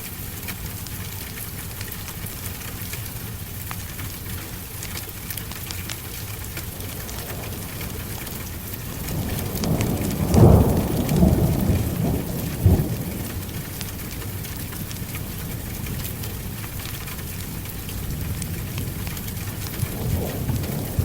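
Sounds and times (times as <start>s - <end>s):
heavy rain: 0.0s - 21.0s
thunder rumbling: 6.1s - 16.6s, 17.2s - 21.0s.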